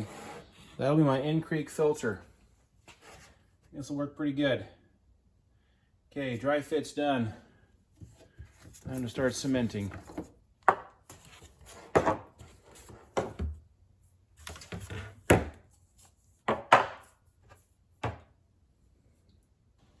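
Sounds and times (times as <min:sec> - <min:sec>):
plastic pipes knocking on workbench: 0:16.5 - 0:17.0.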